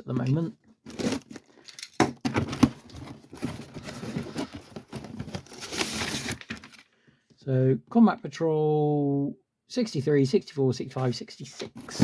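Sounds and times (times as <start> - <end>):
packaging rustling: 0.8 - 6.9.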